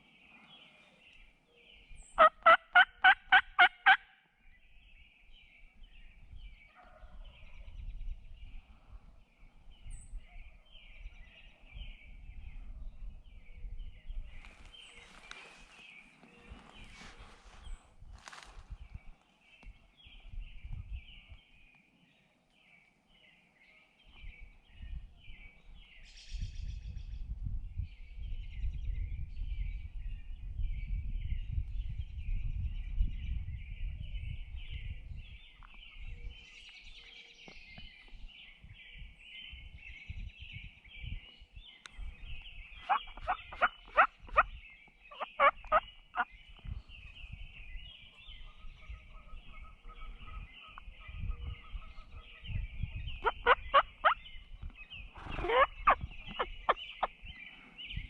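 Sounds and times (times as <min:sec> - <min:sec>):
songbirds chirping: 0:00.0 - 0:58.0
turkey calls: 0:02.2 - 0:04.2, 0:42.8 - 0:46.3, 0:48.4 - 0:54.3, 0:55.0 - 0:57.7.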